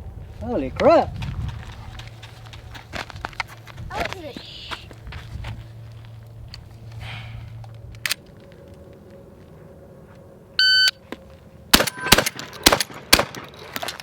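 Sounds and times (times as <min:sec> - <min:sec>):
short electronic beep: 0:10.6 - 0:11.0
shotgun shots: 0:11.7 - 0:13.9.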